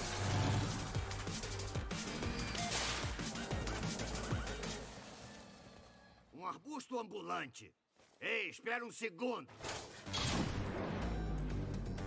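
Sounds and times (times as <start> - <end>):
cartoon soundtrack music: 0.0 - 5.4, 10.1 - 12.0.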